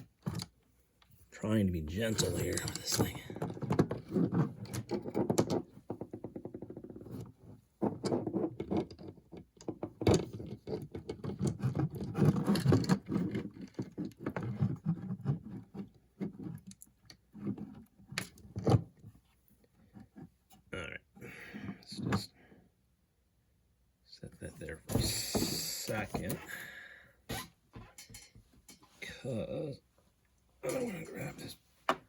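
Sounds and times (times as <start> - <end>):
plastic parts clicking and scraping: 0.0 - 1.2, 1.9 - 19.1.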